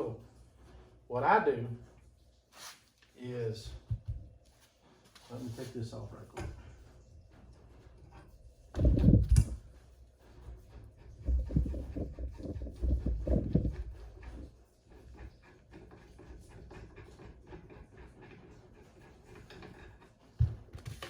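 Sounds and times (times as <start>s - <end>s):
knocks and rattles: 6.3s - 21.0s
low thumps and clunks: 8.7s - 9.8s, 10.8s - 14.5s.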